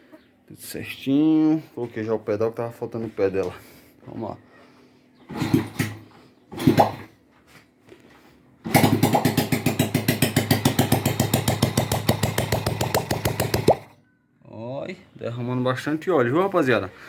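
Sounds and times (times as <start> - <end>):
motorcycle engine kick-started and running: 5.3 - 7.0, 8.6 - 13.9.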